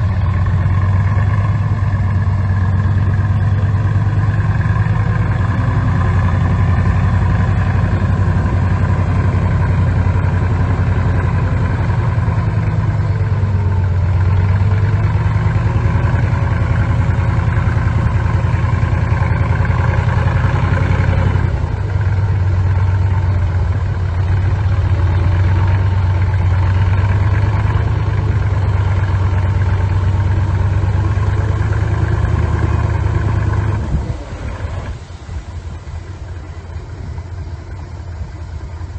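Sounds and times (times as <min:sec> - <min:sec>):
bulldozer diesel engine running: 0:00.0 - 0:38.9.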